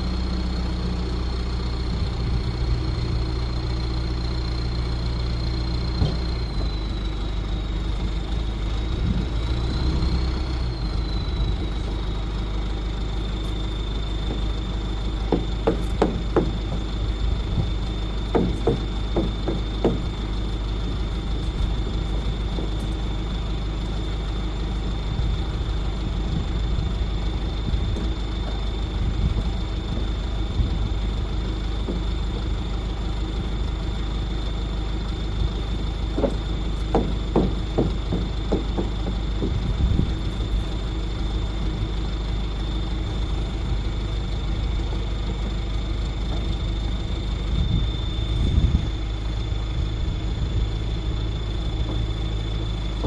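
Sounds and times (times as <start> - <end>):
vehicle low rumble: 0.0 - 53.0
knocks and rattles: 14.2 - 23.2, 29.3 - 32.7, 36.1 - 40.4
faint high whine: 39.4 - 53.0.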